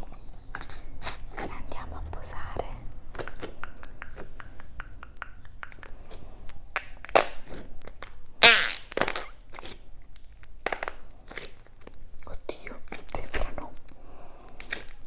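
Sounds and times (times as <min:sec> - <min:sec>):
small crackles and clicks: 0:08.9 - 0:15.0.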